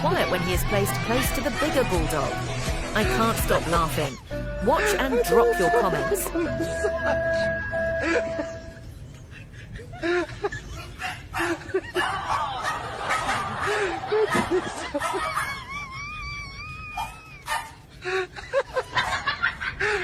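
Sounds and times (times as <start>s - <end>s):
person laughing: 4.0s - 12.7s.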